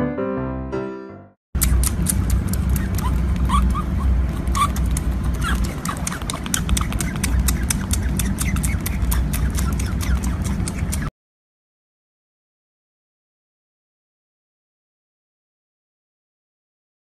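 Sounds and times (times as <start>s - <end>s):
young animals squeaking: 1.6s - 11.1s.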